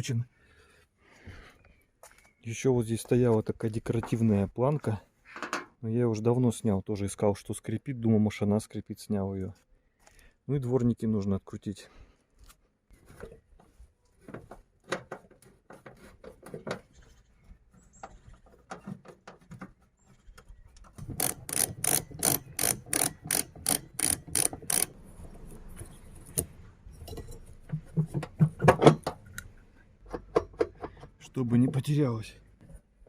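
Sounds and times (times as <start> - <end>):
tools clicking and knocking: 5.3 - 5.7, 20.4 - 25.0, 25.8 - 31.2
ratchet wrench clicking: 21.1 - 25.0.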